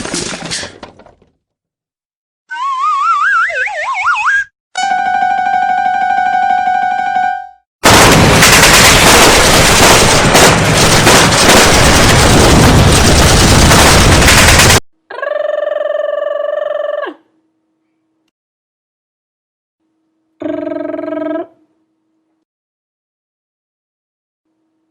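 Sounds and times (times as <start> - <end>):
explosions: 7.8 - 14.8
machine-gun fire: 7.8 - 14.8.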